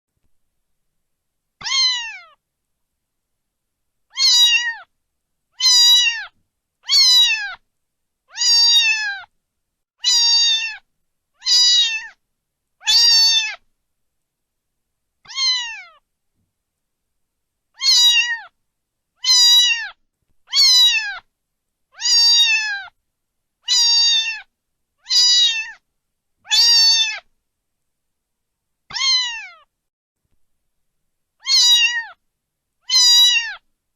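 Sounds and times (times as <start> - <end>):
cat meowing: 1.6 - 2.4, 4.1 - 4.9, 5.6 - 7.6, 8.3 - 9.3, 10.0 - 12.2, 12.8 - 13.6, 15.3 - 16.0, 17.8 - 18.6, 19.2 - 21.3, 22.0 - 23.0, 23.6 - 25.8, 26.4 - 27.3, 28.9 - 29.7, 31.4 - 32.2, 32.8 - 33.7.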